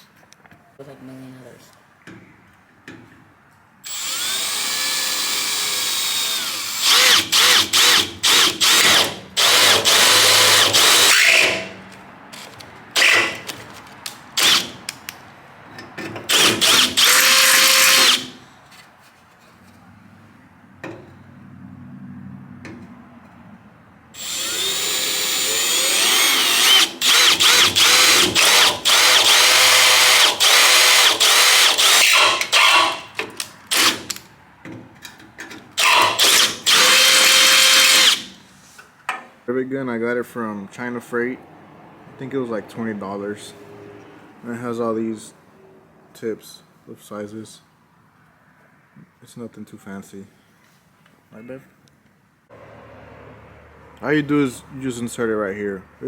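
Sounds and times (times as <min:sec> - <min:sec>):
power drill whining: 0:03.9 - 0:11.8, 0:12.4 - 0:13.6, 0:14.4 - 0:14.9, 0:16.3 - 0:18.4, 0:24.2 - 0:34.2, 0:35.8 - 0:38.4.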